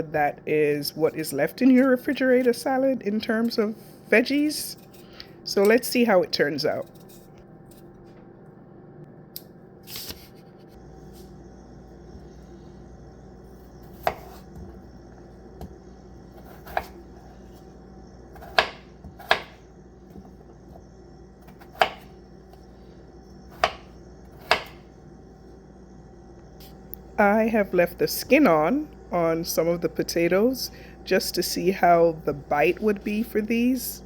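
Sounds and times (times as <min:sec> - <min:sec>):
low hum: 0:00.0 - 0:34.0
knife cutting on board: 0:13.9 - 0:14.6, 0:18.4 - 0:19.6, 0:23.6 - 0:24.8.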